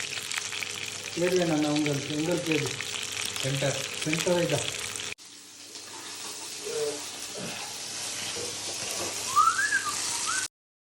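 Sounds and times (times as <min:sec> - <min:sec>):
fish sizzling in hot oil: 0:00.0 - 0:10.5
brief whistle: 0:09.3 - 0:10.5.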